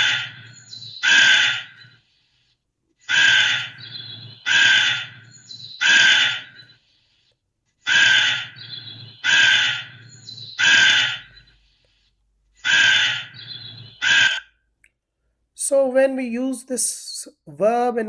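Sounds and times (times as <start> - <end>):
crow cawing: 0.0 - 1.8, 3.1 - 6.6, 7.9 - 11.4, 12.6 - 14.5.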